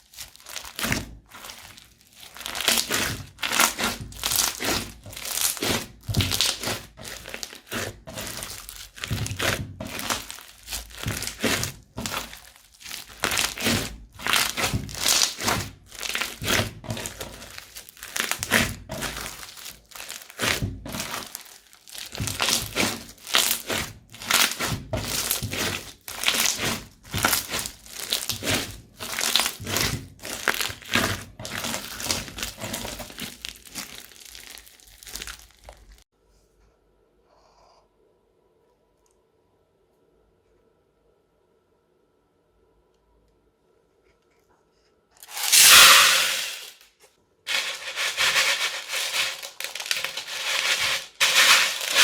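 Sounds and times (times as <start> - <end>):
crunchy slime crackling: 0.0 - 36.0, 45.2 - 46.8, 47.5 - 52.0.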